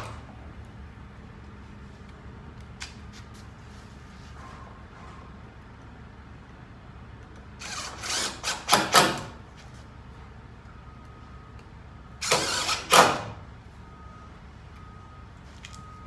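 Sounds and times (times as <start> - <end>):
cordless power tool motor spinning: 7.6 - 9.4, 12.2 - 13.3.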